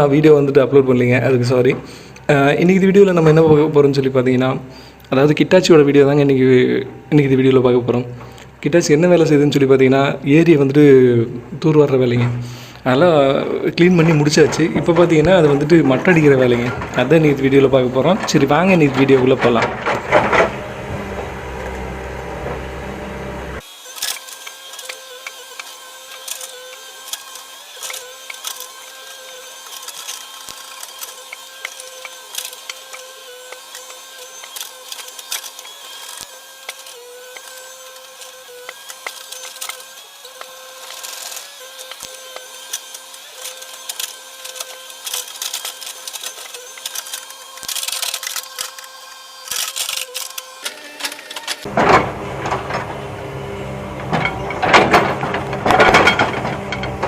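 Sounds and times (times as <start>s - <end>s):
excavator whine: 5.8s - 9.3s, 10.8s - 57.0s
clicks and knocks: 14.0s - 21.8s, 49.5s - 53.2s, 53.8s - 57.0s.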